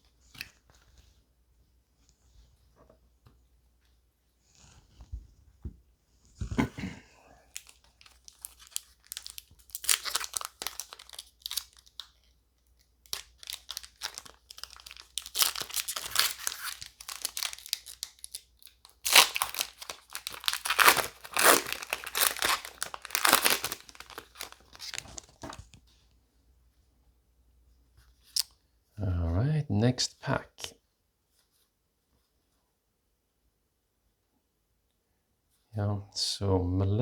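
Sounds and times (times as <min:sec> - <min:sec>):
foil wrapper crinkling and tearing: 0:07.5 - 0:12.3, 0:13.0 - 0:25.7.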